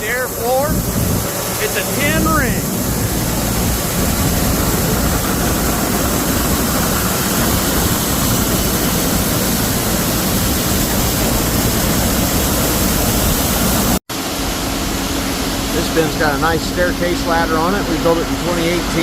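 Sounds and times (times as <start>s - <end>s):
grain auger running: 0.0s - 13.1s.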